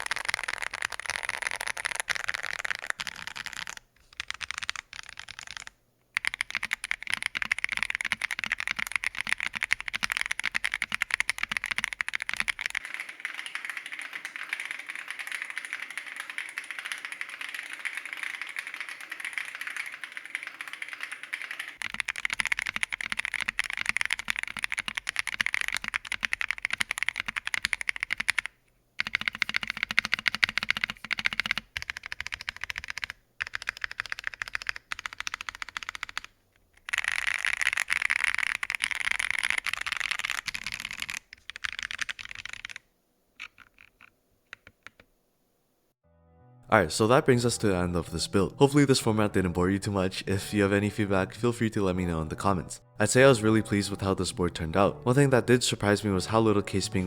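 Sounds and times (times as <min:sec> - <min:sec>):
mechanical keyboard typing: 0:00.0 - 0:45.1.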